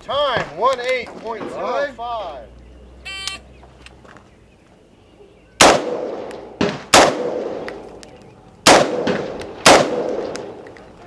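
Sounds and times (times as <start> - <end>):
faint gunshot: 5.6 - 7.8, 8.7 - 10.6
gunshots with ringing echo: 5.6 - 7.9, 8.6 - 10.6.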